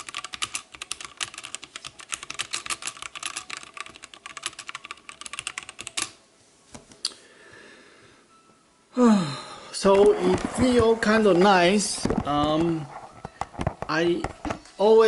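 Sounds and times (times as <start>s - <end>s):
fast typing on mechanical keyboard: 0.0s - 6.2s.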